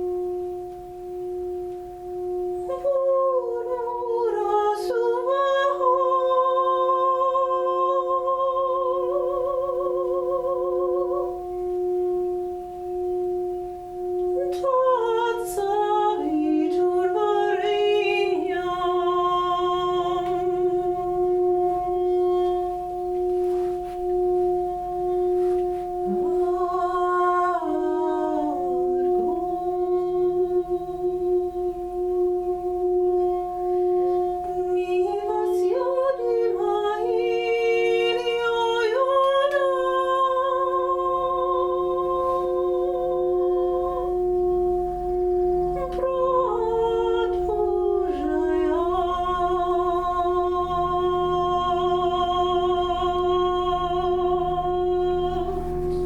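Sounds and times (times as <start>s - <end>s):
singing bowl ringing: 0.0s - 56.0s
person singing wordless notes: 2.6s - 11.8s, 14.2s - 56.0s.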